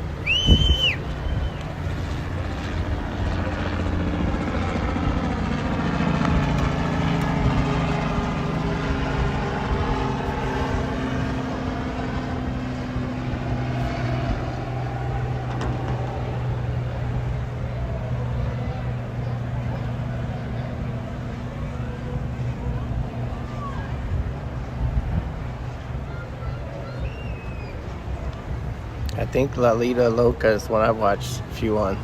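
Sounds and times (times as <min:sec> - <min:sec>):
wind noise: 0:00.0 - 0:17.5, 0:22.8 - 0:29.6
motor engine drone: 0:00.0 - 0:29.5.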